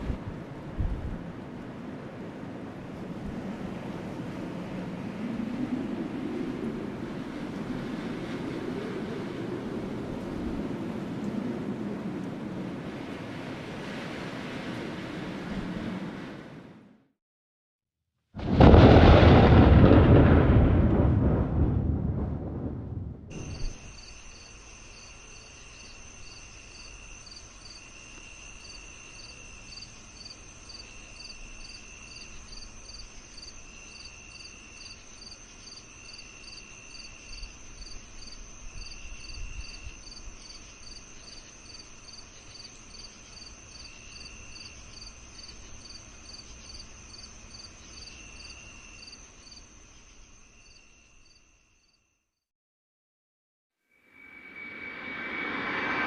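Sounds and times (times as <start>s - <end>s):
low insect trill: 23.3s - 52.2s
crickets chirping: 23.3s - 52.3s, 54.0s - 56.0s.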